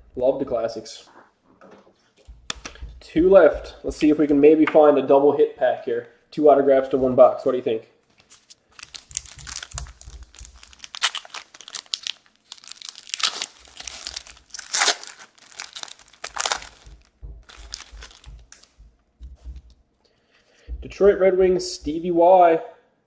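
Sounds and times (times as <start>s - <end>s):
wrapper being torn and crinkled: 8.2s - 18.7s.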